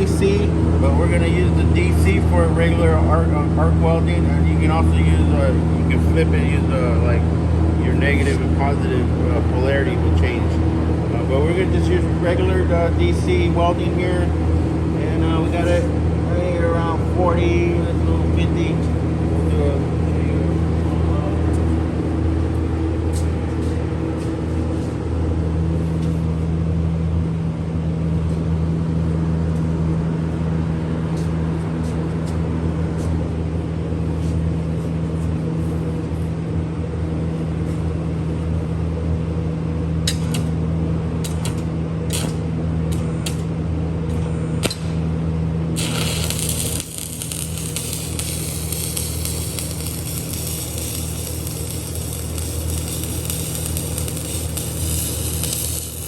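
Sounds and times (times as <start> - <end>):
welding power source humming: 0.0 - 26.9, 37.3 - 56.0
welding arc crackling: 41.2 - 43.5, 45.7 - 56.0.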